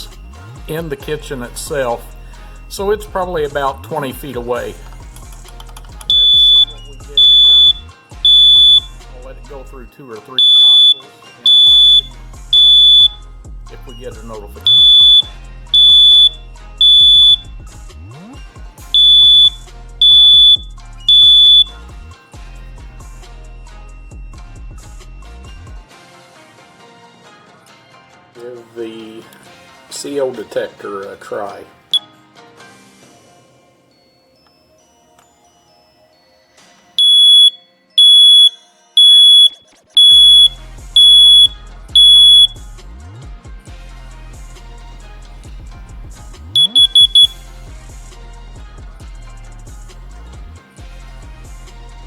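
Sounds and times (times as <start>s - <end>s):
background music: 0.0s - 52.0s
smoke detector alarm beeps: 6.1s - 9.0s, 10.4s - 17.5s, 18.9s - 21.8s, 37.0s - 42.6s, 46.6s - 47.5s.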